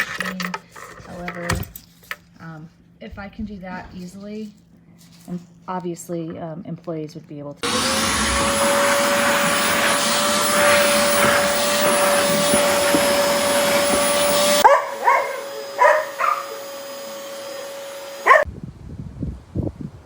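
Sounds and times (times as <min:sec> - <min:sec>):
vacuum cleaner whine: 0:07.6 - 0:18.5
dog barking: 0:14.6 - 0:16.7, 0:18.2 - 0:18.4.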